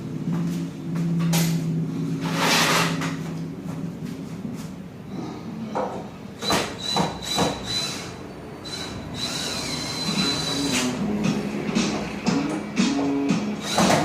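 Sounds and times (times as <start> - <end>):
power drill-driver whining: 6.4 - 10.9
faint music: 10.0 - 14.0.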